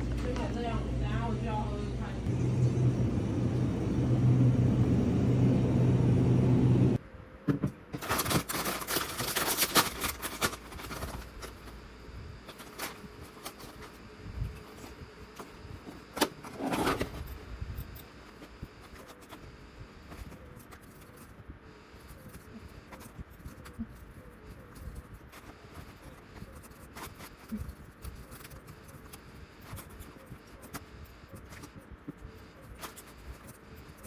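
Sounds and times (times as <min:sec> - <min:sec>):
low vehicle-like hum: 0:00.0 - 0:07.0
clicks and rustling of objects: 0:08.0 - 0:11.8, 0:12.4 - 0:34.0.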